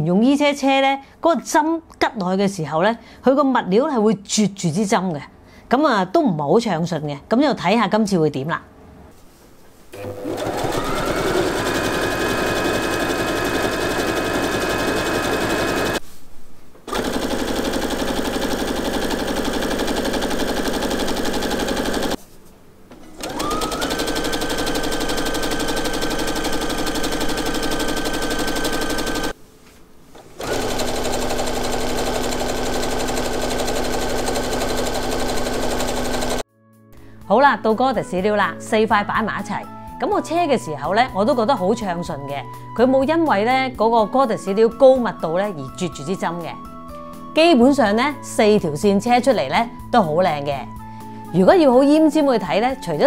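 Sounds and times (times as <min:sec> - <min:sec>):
motor whine: 0:10.0 - 0:12.7
sewing machine stitching: 0:10.0 - 0:16.0, 0:16.9 - 0:22.2, 0:23.2 - 0:29.3, 0:30.4 - 0:36.4.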